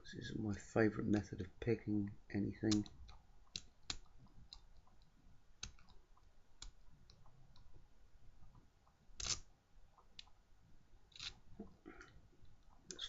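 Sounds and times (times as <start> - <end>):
small metal clicks: 9.2 - 10.4, 11.1 - 11.4.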